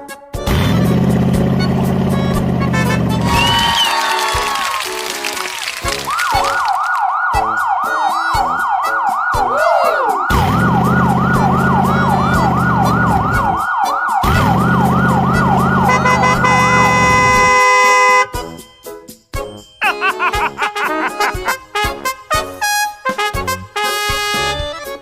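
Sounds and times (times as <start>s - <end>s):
long low droning horn blast: 0.5s - 3.4s, 14.4s - 18.4s
emergency vehicle siren yelping: 3.2s - 4.8s, 6.0s - 17.6s.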